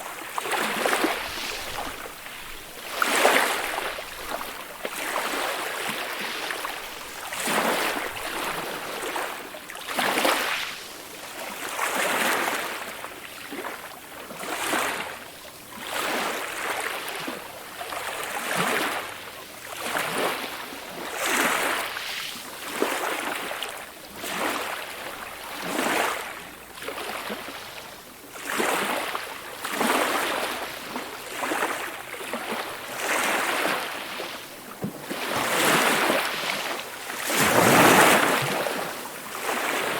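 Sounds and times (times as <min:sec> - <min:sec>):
ocean waves washing: 0:00.0 - 0:11.1, 0:32.9 - 0:39.9.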